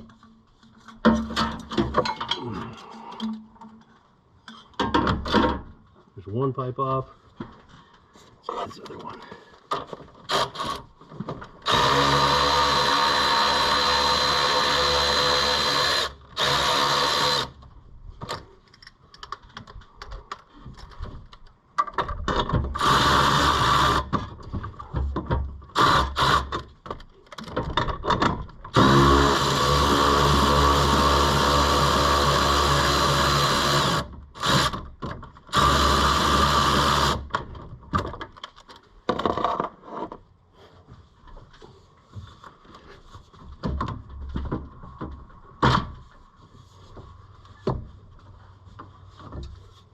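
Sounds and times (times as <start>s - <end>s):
clanks of tools and pipes: 0.0s - 5.7s
cordless power tool spinning: 11.6s - 17.6s, 22.8s - 24.1s, 28.7s - 34.8s, 35.5s - 37.2s.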